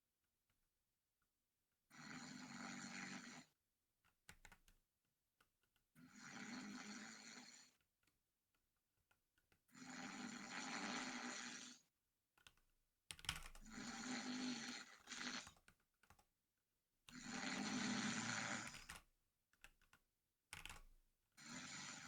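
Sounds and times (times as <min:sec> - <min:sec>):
person snoring: 0:01.9 - 0:03.5, 0:06.1 - 0:07.7, 0:09.8 - 0:11.8, 0:13.8 - 0:15.4, 0:17.2 - 0:18.9, 0:21.4 - 0:22.0.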